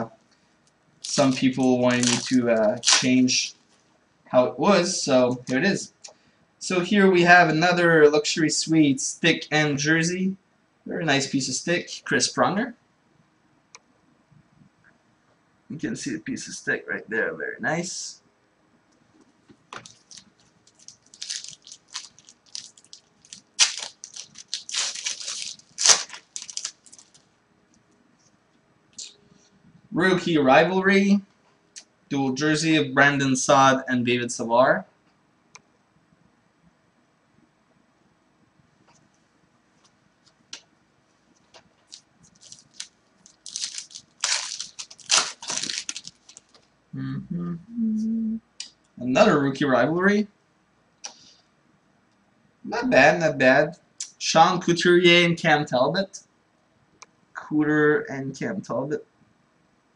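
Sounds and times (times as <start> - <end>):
wrapper crinkling and tearing: 1.0 - 3.2, 19.8 - 27.3, 41.8 - 46.6
cards ticking and rustling: 19.8 - 27.3, 41.4 - 46.7.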